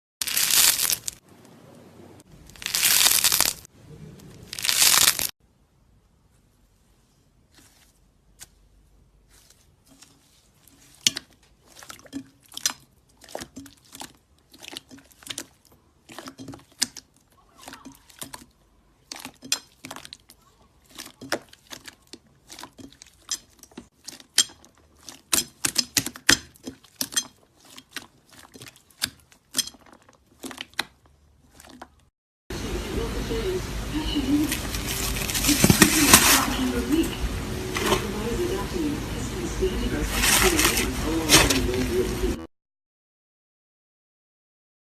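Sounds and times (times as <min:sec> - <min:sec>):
crunchy slime crackling: 0:00.2 - 0:01.2, 0:02.4 - 0:03.7, 0:04.4 - 0:05.3, 0:34.4 - 0:36.8.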